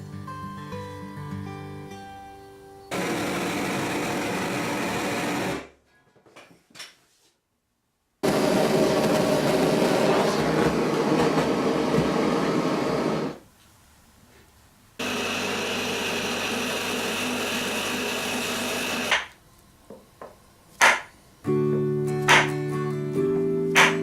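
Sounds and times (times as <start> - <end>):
electric power tool running: 2.9 - 5.7, 8.2 - 13.4, 15.0 - 19.3.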